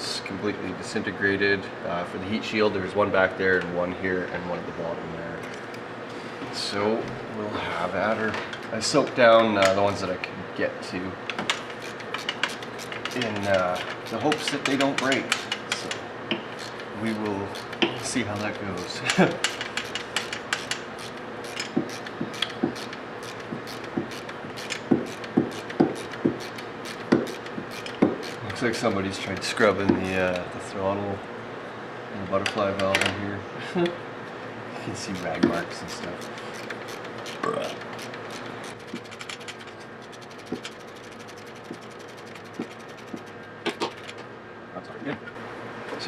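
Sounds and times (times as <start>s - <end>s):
ratchet wrench clicking: 11.7s - 16.0s, 16.6s - 28.6s, 35.1s - 44.2s
tool knocking against metal: 12.2s - 16.8s, 19.1s - 28.4s, 41.6s - 44.0s.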